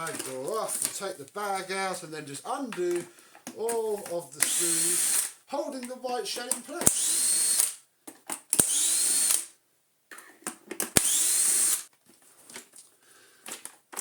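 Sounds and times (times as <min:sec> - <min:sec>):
power screwdriver whine: 0:04.4 - 0:05.4, 0:06.8 - 0:07.8, 0:08.6 - 0:09.5, 0:11.0 - 0:11.9.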